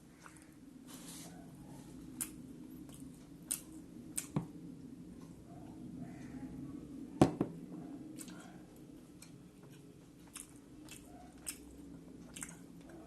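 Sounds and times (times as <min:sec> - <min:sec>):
steady low hum: 0:00.0 - 0:13.0
chewing clicks and smacks: 0:02.2 - 0:04.4, 0:08.2 - 0:13.0.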